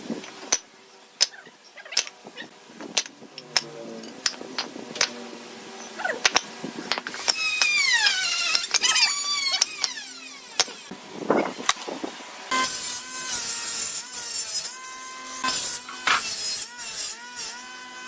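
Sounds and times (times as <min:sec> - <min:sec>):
sharp clicks and knocks: 0:02.8 - 0:05.2, 0:06.2 - 0:07.8
high-pitched tool whines: 0:07.1 - 0:11.7, 0:12.4 - 0:18.0.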